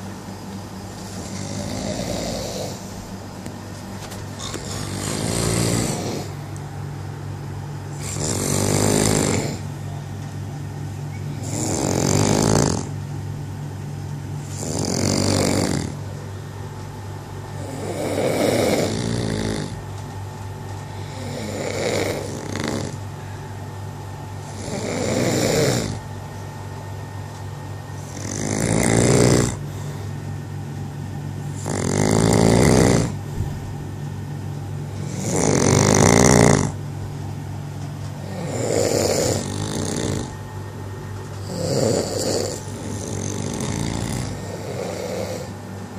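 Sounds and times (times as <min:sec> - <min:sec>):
person snoring loudly: 0:01.1 - 0:02.9, 0:04.4 - 0:06.4, 0:07.9 - 0:09.7, 0:11.4 - 0:12.9, 0:14.4 - 0:16.0, 0:17.6 - 0:19.8, 0:21.0 - 0:23.0, 0:24.4 - 0:26.0, 0:28.0 - 0:29.7, 0:31.6 - 0:33.2, 0:35.0 - 0:36.8, 0:38.2 - 0:40.4, 0:41.4 - 0:45.5.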